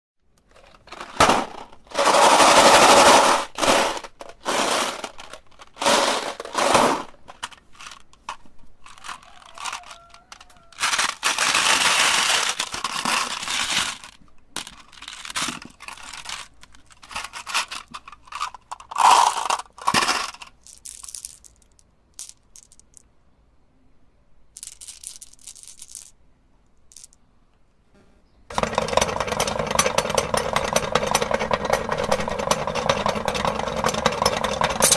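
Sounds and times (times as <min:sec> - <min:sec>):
cracking and crunching: 0:00.4 - 0:21.6
electric meat grinder motor: 0:28.5 - 0:34.8.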